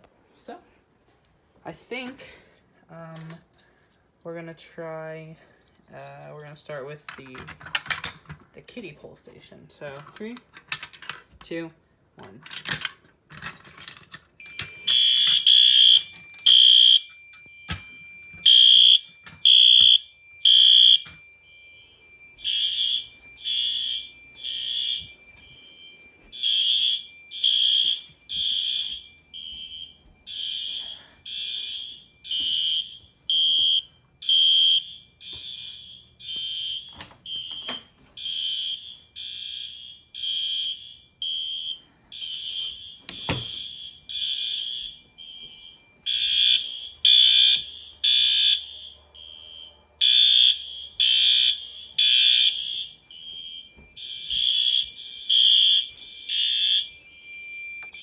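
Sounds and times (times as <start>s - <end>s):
fire alarm horns blasting: 13.9s - 58.0s.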